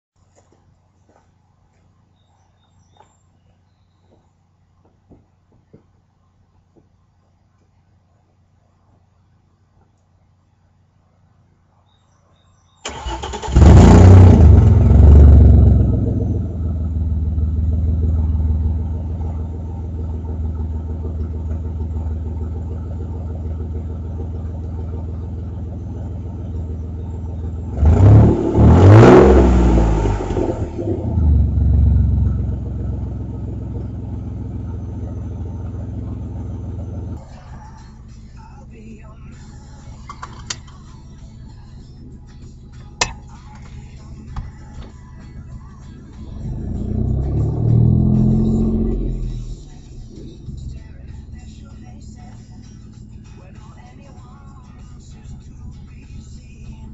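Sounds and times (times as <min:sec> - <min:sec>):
engine revving: 0:12.8 - 0:37.9, 0:46.0 - 0:52.7
car engine starting and idling: 0:12.8 - 0:56.9.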